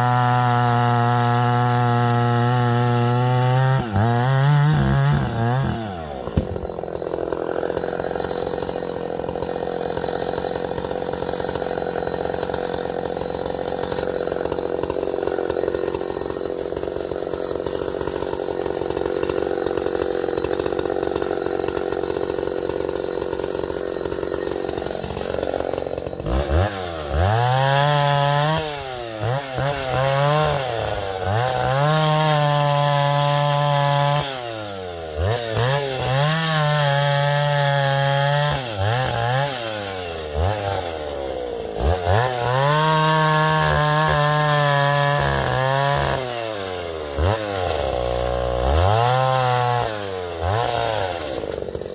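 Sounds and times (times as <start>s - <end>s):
chainsaw revving: 0.0s - 51.9s.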